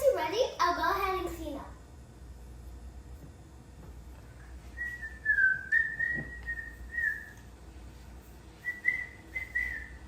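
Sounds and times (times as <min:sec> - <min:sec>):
person whistling a tune: 0:04.8 - 0:07.4, 0:08.6 - 0:10.0.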